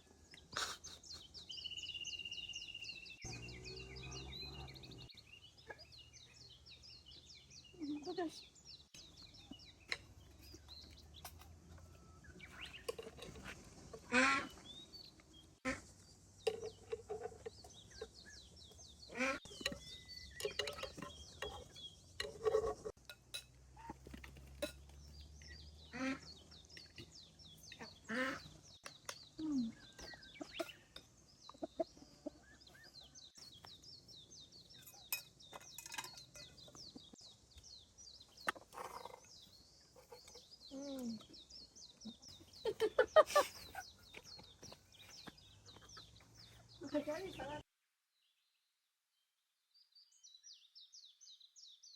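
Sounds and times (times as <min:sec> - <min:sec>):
small birds chirping: 0:00.0 - 0:51.9
chickens clucking: 0:29.8 - 0:33.5, 0:38.2 - 0:40.6.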